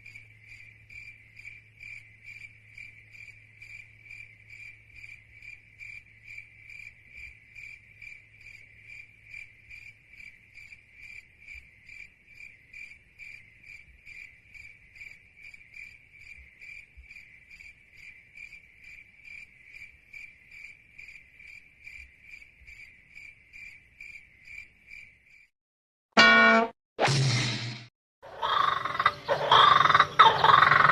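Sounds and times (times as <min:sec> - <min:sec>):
cricket chirping: 0:00.0 - 0:25.5, 0:28.3 - 0:30.9
loud pitched sound: 0:26.2 - 0:27.9.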